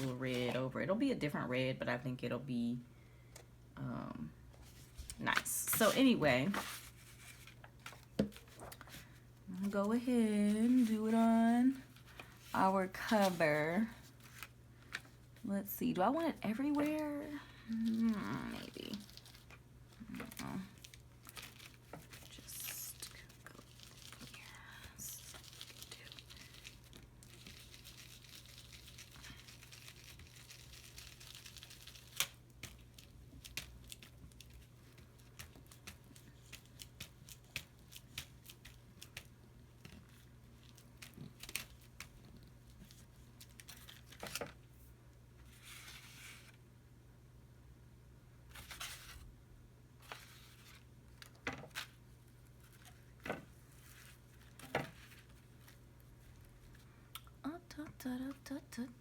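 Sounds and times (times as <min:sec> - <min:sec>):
paper rustling: 0:04.6 - 0:09.2, 0:10.4 - 0:15.2, 0:17.8 - 0:44.5.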